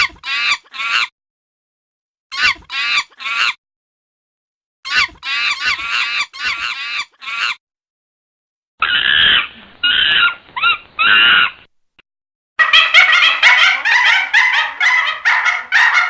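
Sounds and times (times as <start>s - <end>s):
duller animal calls in bursts: 12.6s - 16.0s.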